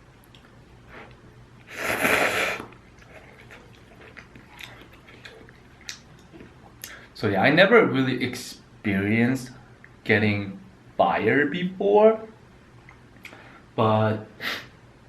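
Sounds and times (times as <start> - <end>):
chewing: 0.2 - 1.2, 2.6 - 7.0
loud noodle slurp: 1.7 - 4.0.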